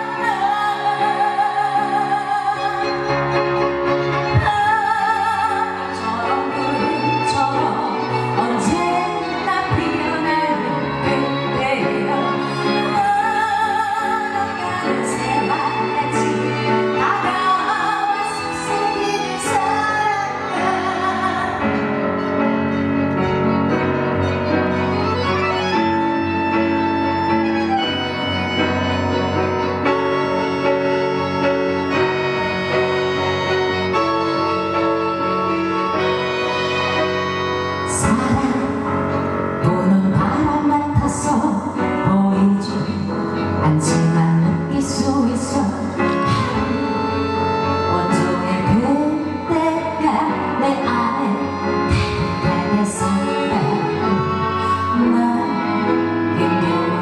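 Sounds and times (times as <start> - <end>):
woman singing with vibrato: 0.0 - 3.1, 4.4 - 21.9, 37.9 - 39.0, 39.6 - 57.0
instrumental accompaniment: 0.0 - 57.0.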